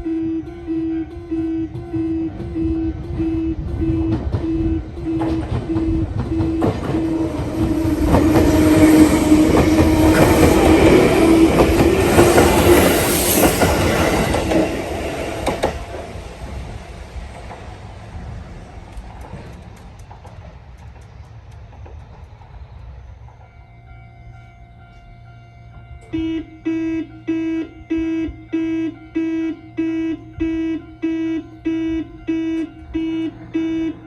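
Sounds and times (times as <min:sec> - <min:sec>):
train wheels clicking over rail joints: 0:01.7 - 0:23.7
level crossing buzzer beeping: 0:26.1 - 0:34.0.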